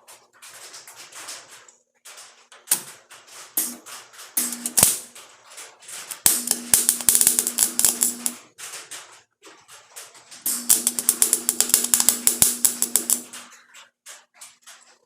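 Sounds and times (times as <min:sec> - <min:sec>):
welding arc crackling: 0:02.1 - 0:09.3, 0:09.9 - 0:14.7
steady welder hum: 0:03.6 - 0:05.4, 0:06.1 - 0:08.7, 0:10.4 - 0:13.5.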